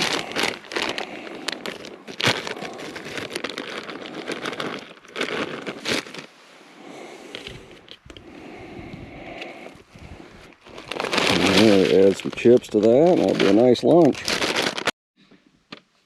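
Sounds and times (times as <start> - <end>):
plastic packaging crinkling: 0.0 - 6.4, 10.1 - 15.0.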